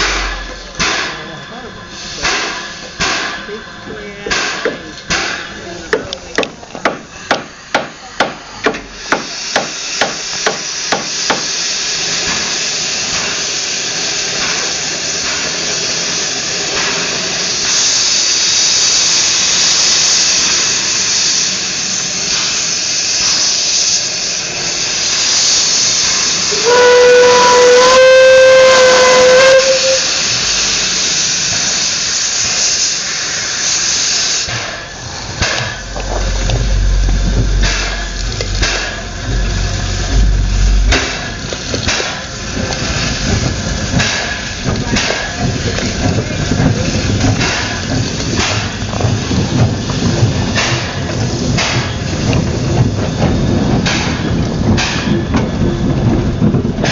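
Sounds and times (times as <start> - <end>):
steam hissing: 0.0 - 56.9
steam locomotive chuffing: 0.0 - 56.9
steam whistle blast: 26.5 - 30.2.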